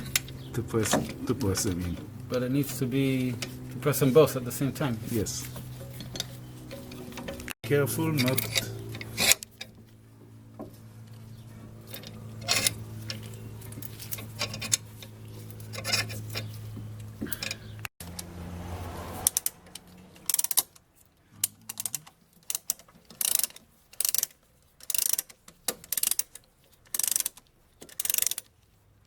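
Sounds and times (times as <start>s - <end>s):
metallic ratcheting clicks: 19.3s - 20.8s, 21.4s - 28.5s.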